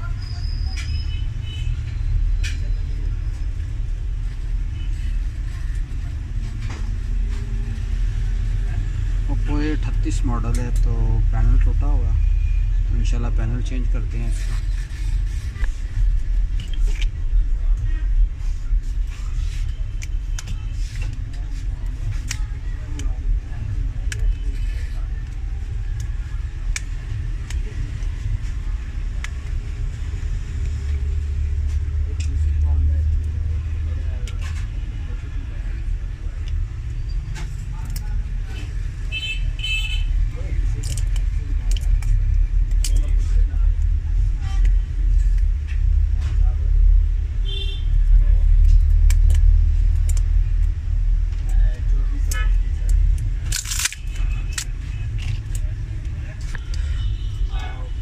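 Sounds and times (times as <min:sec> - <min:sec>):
steady low rumble: 0:01.2 - 0:58.0
small tools clicking: 0:52.2 - 0:55.8.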